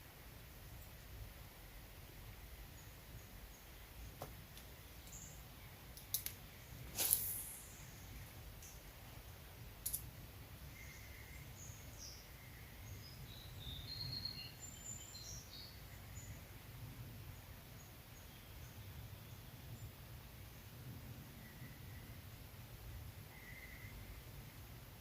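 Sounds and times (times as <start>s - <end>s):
faint birdsong: 0.0s - 25.0s
sharp click: 6.0s - 6.4s, 9.8s - 10.1s.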